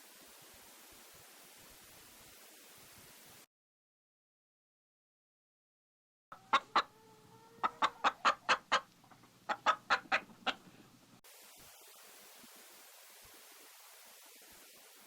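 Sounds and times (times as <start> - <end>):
hen clucking: 6.3 - 10.9.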